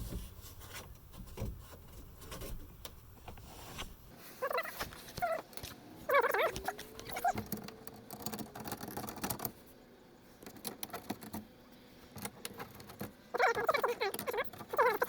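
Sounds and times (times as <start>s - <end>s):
wavering squeak: 6.1s - 7.4s, 13.3s - 15.0s
plastic clicks and rattles: 6.5s - 9.6s, 10.4s - 11.5s, 12.1s - 15.0s.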